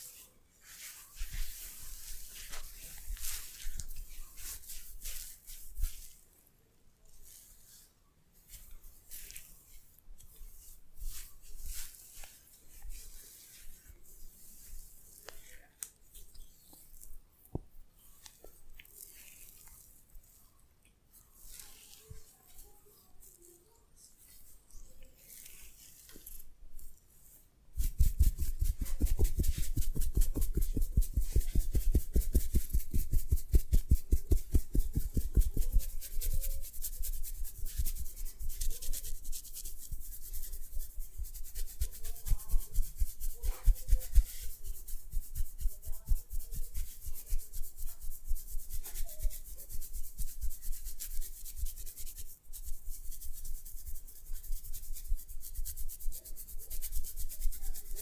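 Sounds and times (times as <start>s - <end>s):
massage strokes rubbing rhythmically: 0.7s - 6.3s, 27.7s - 58.0s.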